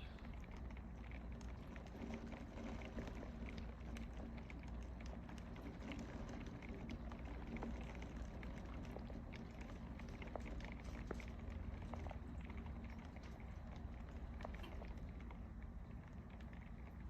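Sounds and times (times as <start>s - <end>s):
faint low hum: 0.0s - 17.0s
steady rain falling: 0.0s - 17.0s.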